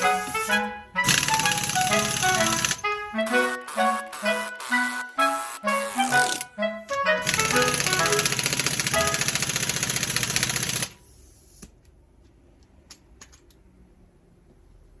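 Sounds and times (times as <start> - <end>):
pneumatic impact wrench rattling: 0.0 - 2.8, 7.2 - 11.7.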